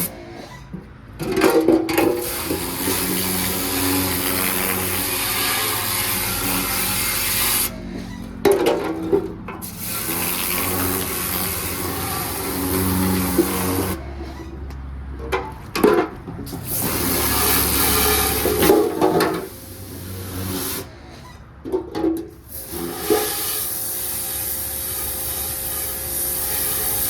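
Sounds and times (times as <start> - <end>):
pressure washer spraying metal: 2.1 - 7.8, 9.6 - 14.1, 16.6 - 20.9, 22.4 - 27.0.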